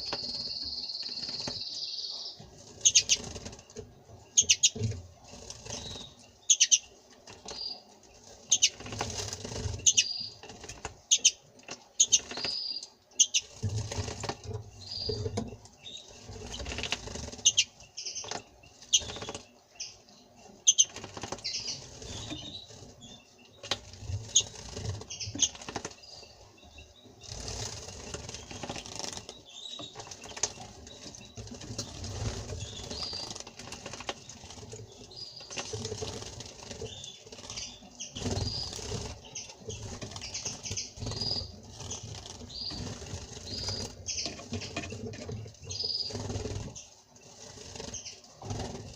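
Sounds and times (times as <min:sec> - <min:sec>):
high bird chirps: 0:00.0 - 0:03.2, 0:09.8 - 0:10.4, 0:36.9 - 0:44.7
wings fluttering and splashing water: 0:02.5 - 0:19.6, 0:20.6 - 0:48.9.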